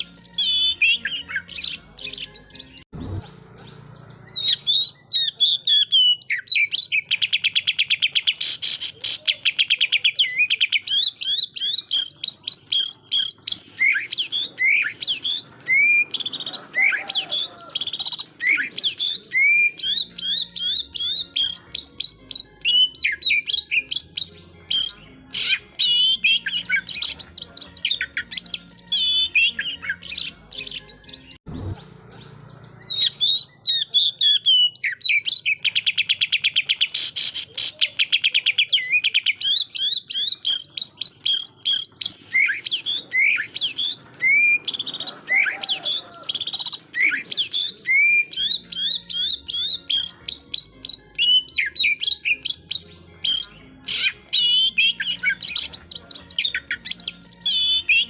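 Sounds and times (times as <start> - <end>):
bird singing chirps and whistles: 0.0 - 58.0.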